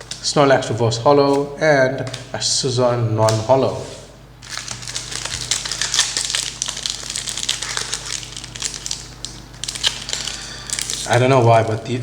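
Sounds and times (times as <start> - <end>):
foil wrapper crinkling: 4.4 - 11.9.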